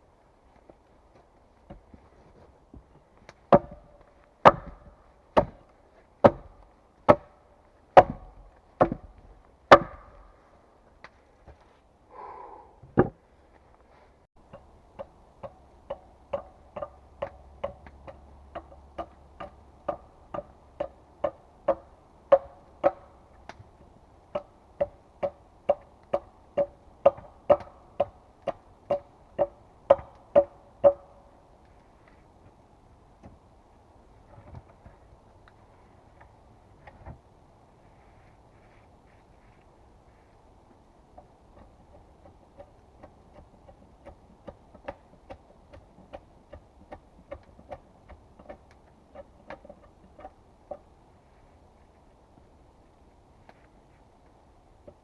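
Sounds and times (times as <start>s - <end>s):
hand tool striking wood: 3.5s - 7.4s, 8.0s - 10.3s, 14.5s - 23.2s, 24.3s - 31.2s, 41.2s - 50.9s.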